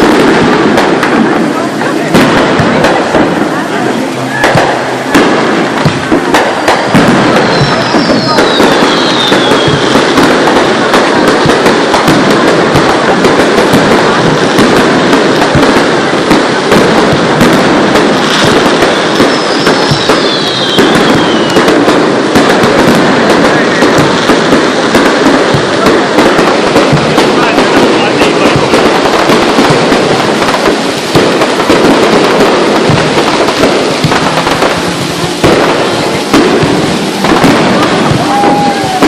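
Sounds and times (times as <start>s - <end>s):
fireworks bangs and crackling: 0.0s - 39.0s
falling firework whistle: 4.1s - 12.2s, 17.4s - 25.4s, 31.4s - 39.0s.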